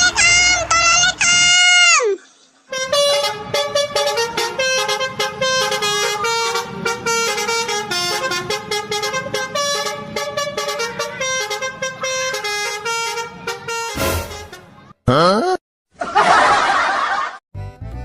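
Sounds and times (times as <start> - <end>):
musical air horn tune: 2.7 - 14.8.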